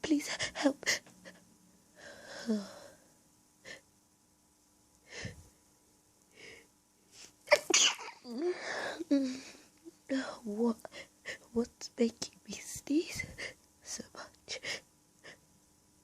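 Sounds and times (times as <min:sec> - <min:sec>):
person sneezing: 0:07.5 - 0:08.2.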